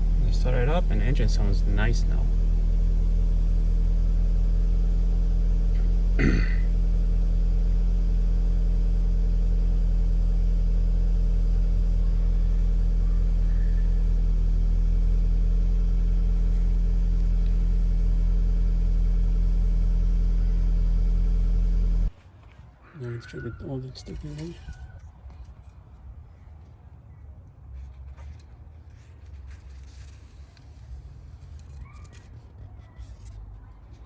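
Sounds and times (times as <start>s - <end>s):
car engine idling: 0.0s - 22.1s.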